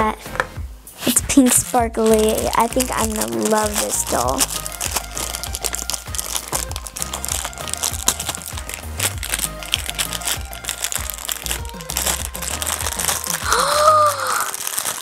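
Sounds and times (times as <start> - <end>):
background music with bass line: 0.0 - 14.1
plastic wrapping crinkling: 1.0 - 15.0.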